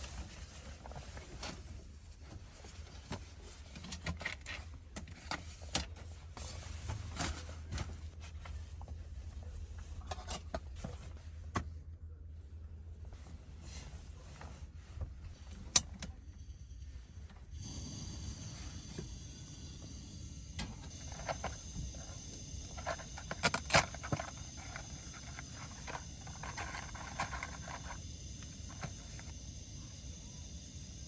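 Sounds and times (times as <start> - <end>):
insect chorus: 17.6 - 31.0.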